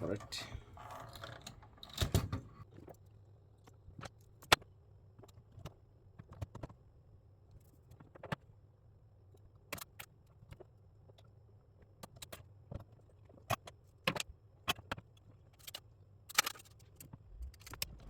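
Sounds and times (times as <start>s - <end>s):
faint low hum: 17.0s - 18.0s.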